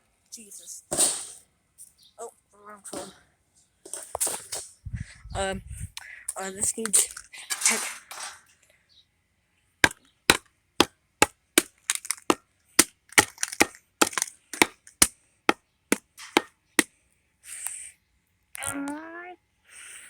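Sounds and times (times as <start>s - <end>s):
phone being smashed: 11.2s - 15.1s, 15.9s - 16.5s.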